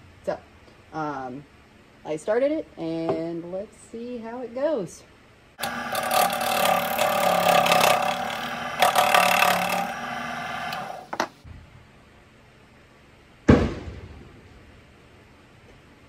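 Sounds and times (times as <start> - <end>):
tool scraping on lathe: 5.6 - 11.1
lathe motor humming: 5.6 - 11.2.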